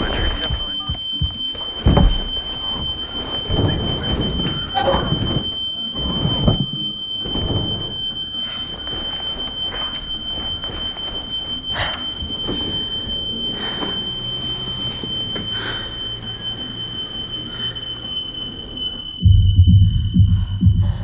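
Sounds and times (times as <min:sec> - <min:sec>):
rumbling low noise: 0:19.2 - 0:21.0.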